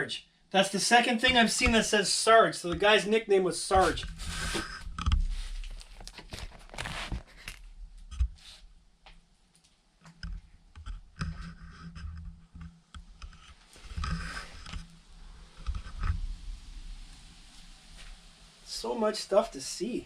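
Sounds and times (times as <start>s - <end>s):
clicks knocks and scrapes of objects: 10.0s - 16.3s.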